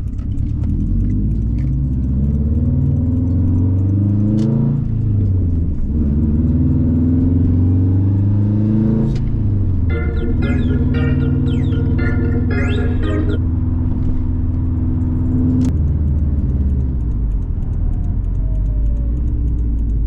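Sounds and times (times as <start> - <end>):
car engine accelerating hard: 0.0 - 20.0
music: 9.9 - 13.4.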